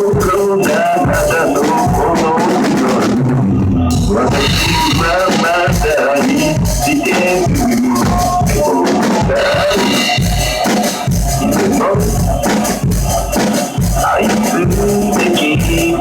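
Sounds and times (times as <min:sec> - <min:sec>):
drum kit with cymbals: 0:00.0 - 0:16.0
rock song with singing: 0:00.0 - 0:16.0.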